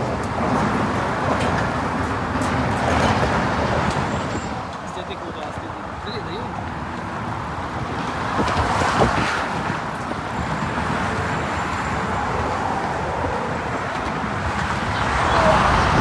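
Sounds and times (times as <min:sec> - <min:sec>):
passing cars: 0:00.0 - 0:16.0
wind on microphone: 0:07.3 - 0:16.0.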